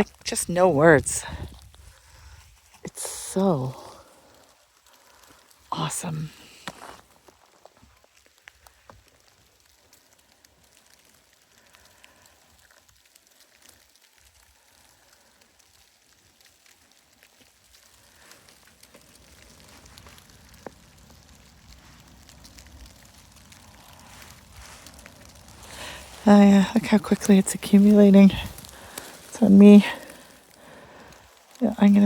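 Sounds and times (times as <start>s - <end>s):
wet snow pattering: 0.0s - 32.0s
low wind rumble: 19.2s - 32.0s.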